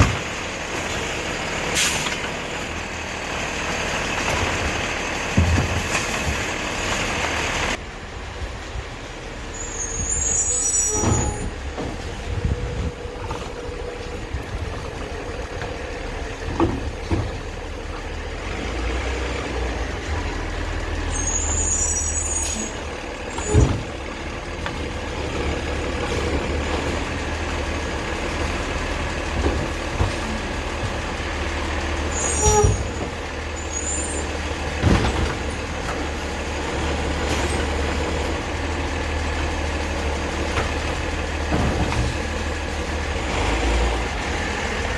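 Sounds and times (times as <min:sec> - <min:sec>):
garbage truck engine rumble: 0:00.0 - 0:44.9
sharp knocks and bangs: 0:05.3 - 0:06.5.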